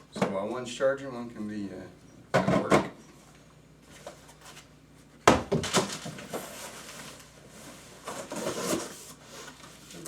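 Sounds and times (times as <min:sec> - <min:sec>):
tool boxes and packaging handled: 0:05.5 - 0:10.0.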